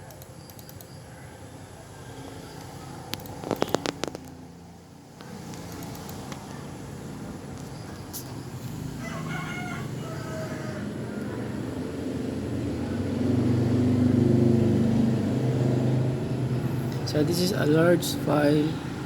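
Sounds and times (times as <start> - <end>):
rooster crowing: 8.8 - 11.8.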